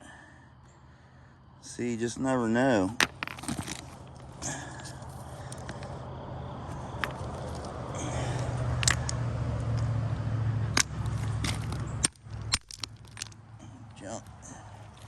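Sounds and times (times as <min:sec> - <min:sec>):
steady low rumble: 0:00.0 - 0:15.0
stones clacking together: 0:02.8 - 0:05.9, 0:06.7 - 0:09.9, 0:10.7 - 0:15.0.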